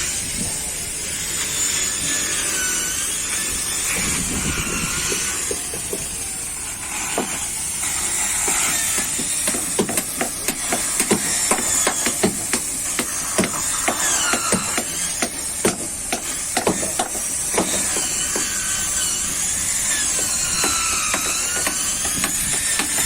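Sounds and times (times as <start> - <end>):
rapid hammering on wood: 8.5 - 18.5, 20.2 - 23.0.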